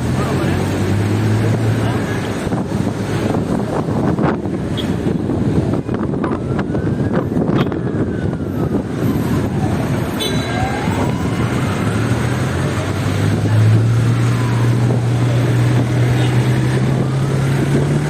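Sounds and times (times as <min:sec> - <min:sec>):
road traffic: 0:00.0 - 0:18.0
wind buffeting microphone: 0:01.3 - 0:18.0
low engine hum: 0:05.2 - 0:18.0.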